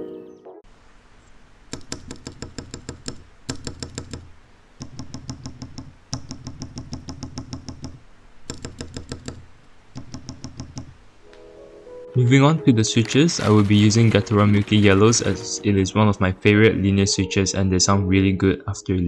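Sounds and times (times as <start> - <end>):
rapid clacking key presses: 1.7 - 9.4.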